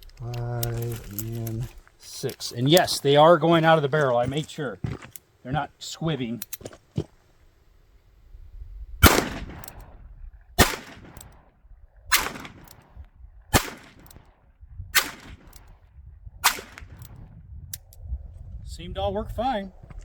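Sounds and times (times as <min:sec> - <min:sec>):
revolver shots with echo: 0:09.0 - 0:09.6.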